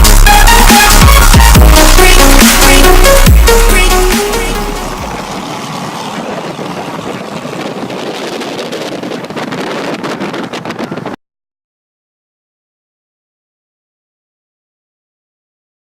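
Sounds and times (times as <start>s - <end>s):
boat rushing through water: 4.6s - 11.2s
wind buffeting microphone: 5.0s - 11.2s.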